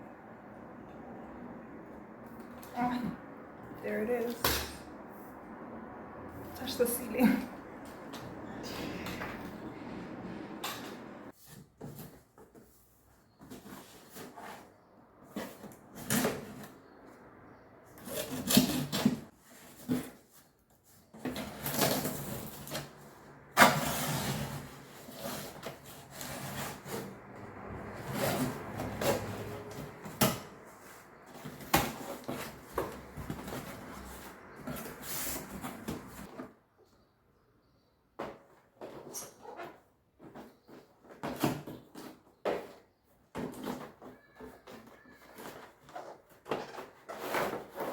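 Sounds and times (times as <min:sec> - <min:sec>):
scraping and rubbing: 0:17.9 - 0:36.3.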